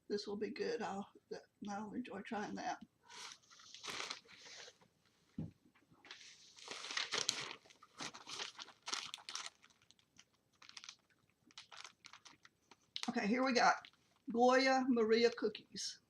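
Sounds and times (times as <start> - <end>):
packaging crinkling and rustling: 3.4 - 4.8, 6.1 - 14.3.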